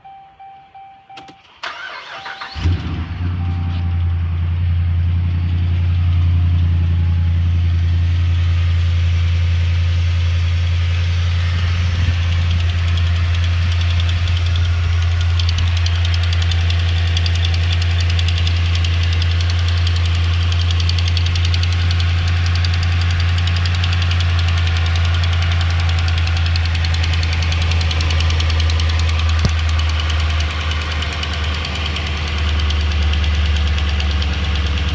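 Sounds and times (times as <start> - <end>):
engine cranking and starting: 1.1 - 4.0, 11.7 - 34.9
engine idling with rapid tick: 5.0 - 34.9.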